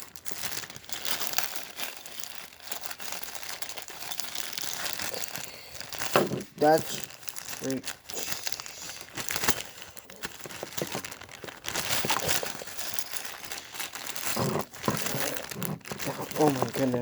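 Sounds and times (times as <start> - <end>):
packaging crinkling: 0.0 - 17.0.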